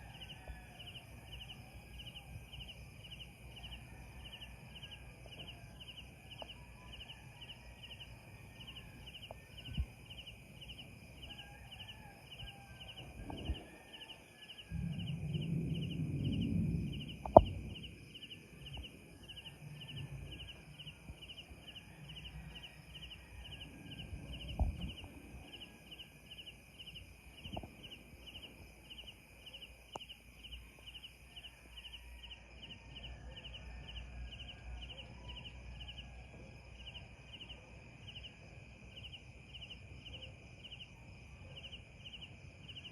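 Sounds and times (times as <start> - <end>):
crickets chirping: 0.0 - 42.9.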